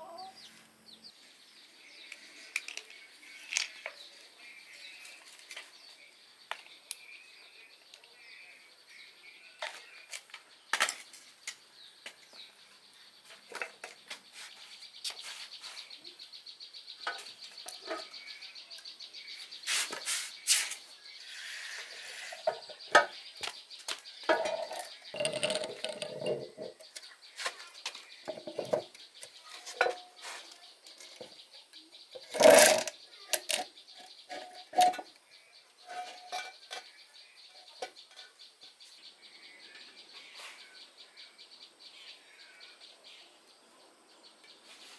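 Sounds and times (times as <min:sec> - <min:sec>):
hand tools clinking on metal: 0:24.3 - 0:26.8, 0:35.9 - 0:37.0.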